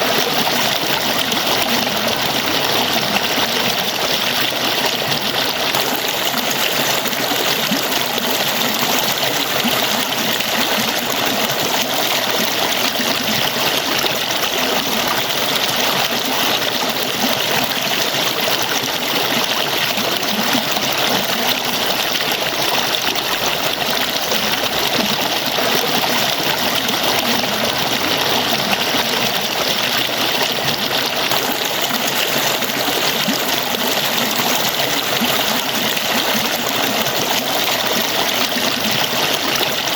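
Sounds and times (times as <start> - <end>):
water falling and splashing: 0.0 - 39.9.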